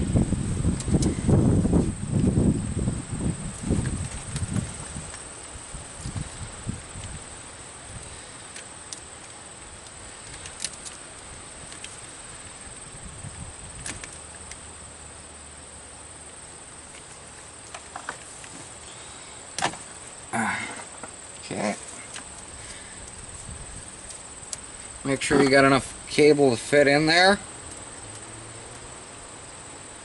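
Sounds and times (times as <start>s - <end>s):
cable and tools clicking: 8.5s - 12.0s.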